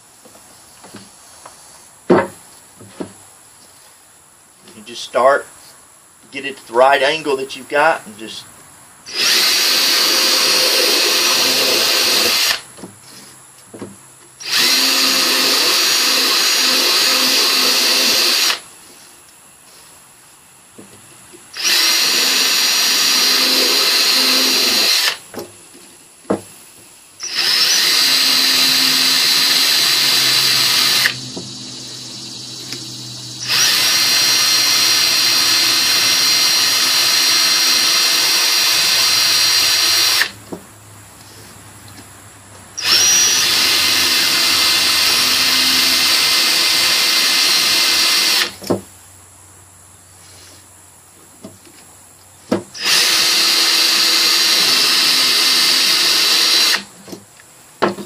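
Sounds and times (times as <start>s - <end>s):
cordless drill motor whine: 9.1s - 12.6s, 14.4s - 18.6s, 21.6s - 25.2s, 27.2s - 40.3s, 42.8s - 48.6s, 52.8s - 56.8s.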